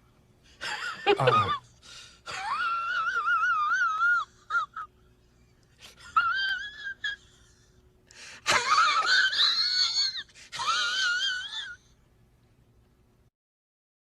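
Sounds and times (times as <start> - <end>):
high-pitched wailing cries: 2.3 - 4.9, 6.1 - 7.3, 8.5 - 11.9.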